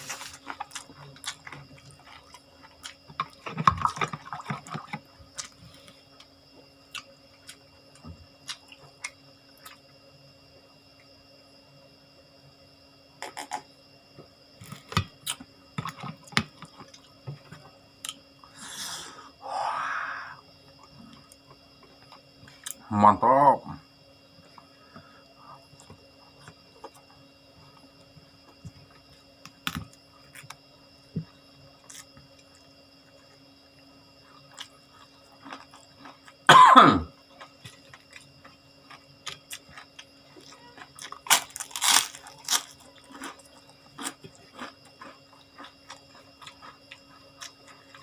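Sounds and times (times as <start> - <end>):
person chewing: 0.0 - 5.6, 34.3 - 36.5, 37.3 - 48.0
breathy rushes: 18.5 - 20.4
chewing with wet mouth clicks: 42.3 - 48.0.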